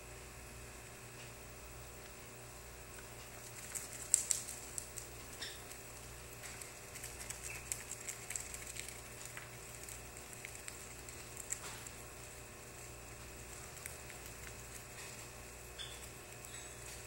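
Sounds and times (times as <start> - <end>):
faint steady hum: 0.0 - 17.0
bird pecking and scuffling: 2.9 - 17.0
faint bird chirps: 15.8 - 17.0.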